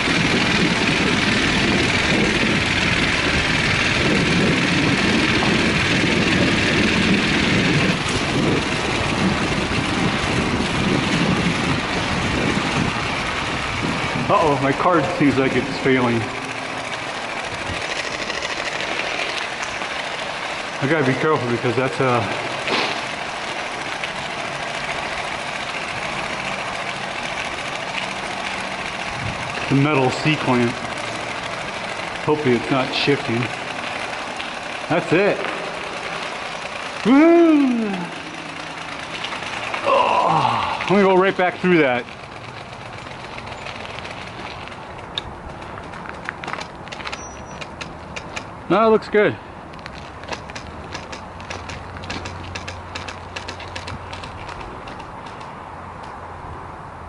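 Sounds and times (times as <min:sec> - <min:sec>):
wind buffeting microphone: 0:00.0 - 0:18.2, 0:28.7 - 0:35.4
bicycle tyre road noise: 0:00.0 - 0:57.0.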